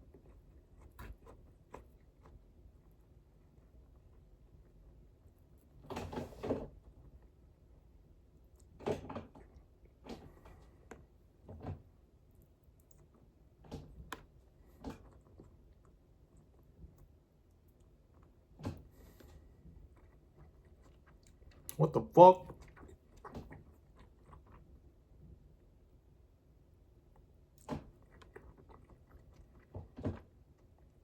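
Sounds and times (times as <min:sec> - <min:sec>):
chewing: 0:00.0 - 0:05.8, 0:12.2 - 0:25.6, 0:27.0 - 0:31.0.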